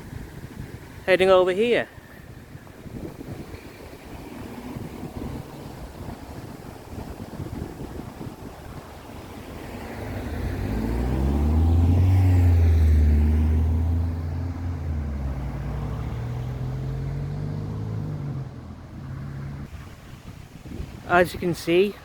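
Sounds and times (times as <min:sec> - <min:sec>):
engine hum: 0:03.0 - 0:20.1
vehicle passing by: 0:09.1 - 0:20.2.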